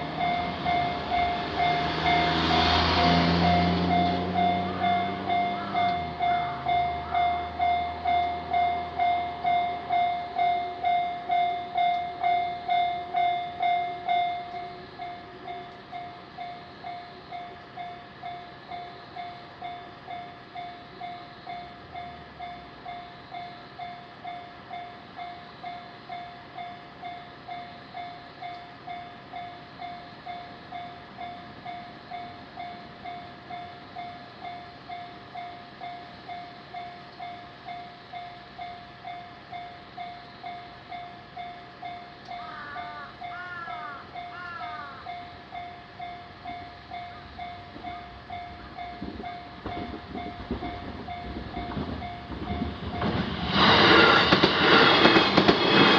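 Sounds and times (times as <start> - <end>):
railroad crossing bell ringing: 0.0 - 55.9.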